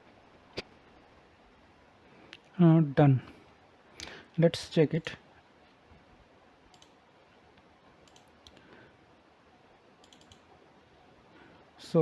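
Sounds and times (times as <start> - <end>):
computer mouse clicks: 6.7 - 7.0, 8.0 - 8.7, 10.0 - 10.5.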